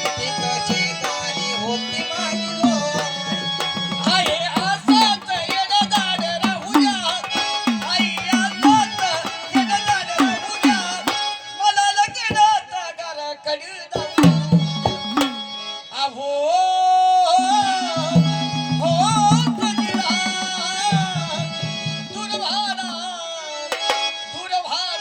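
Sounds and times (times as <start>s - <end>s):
wavering melody: 0.0s - 11.2s, 17.5s - 23.2s
hand drum beating: 0.0s - 11.3s, 14.0s - 15.6s, 17.6s - 23.0s.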